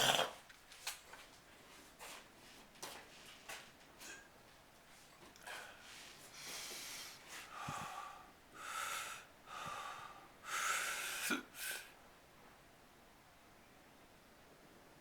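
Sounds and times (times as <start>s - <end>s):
man breathing hard: 5.5s - 11.9s.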